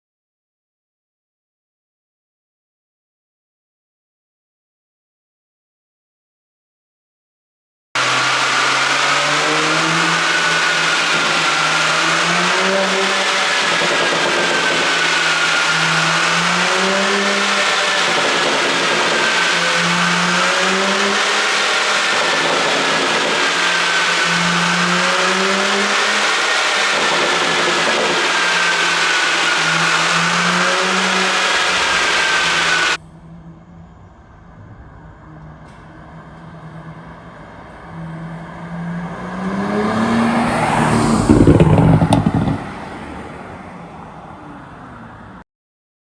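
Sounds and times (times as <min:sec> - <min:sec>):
car engine running: 0:08.0 - 0:33.0, 0:37.6 - 0:44.4
engine revving: 0:08.0 - 0:33.0, 0:37.5 - 0:45.4
road and wind noise: 0:08.0 - 0:45.4
exhaust pops and crackles: 0:12.9 - 0:15.7, 0:39.1 - 0:43.1.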